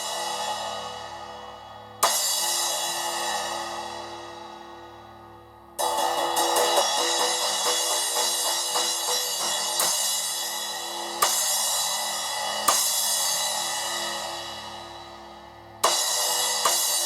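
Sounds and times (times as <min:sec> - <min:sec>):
splash cymbal strikes: 0:00.0 - 0:05.0, 0:05.8 - 0:17.0.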